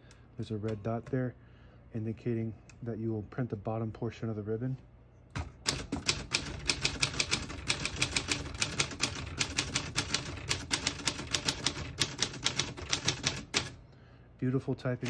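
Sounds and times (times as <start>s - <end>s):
typewriter typing: 5.4s - 13.8s.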